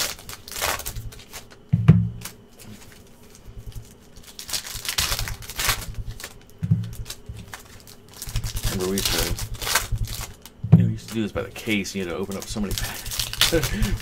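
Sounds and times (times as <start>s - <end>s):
rustling and scraping of packaging: 0.0s - 14.0s
background music with low beat: 1.7s - 2.3s.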